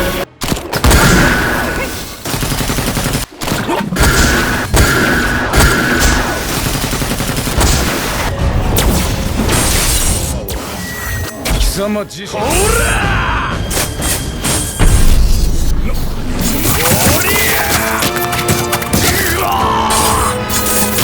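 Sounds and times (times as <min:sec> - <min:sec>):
rapid fight hits and booms: 0:00.4 - 0:10.4.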